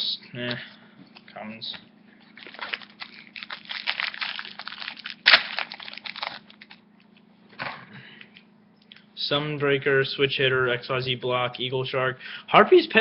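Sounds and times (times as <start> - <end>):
cards rustling: 2.2 - 6.8
foil wrapper crinkling and tearing: 2.3 - 6.8.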